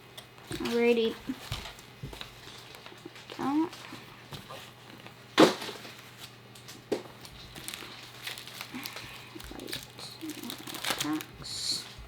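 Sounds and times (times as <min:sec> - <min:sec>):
card packaging crinkling: 0:05.6 - 0:12.0
sharp crack of packaging: 0:07.5 - 0:11.3.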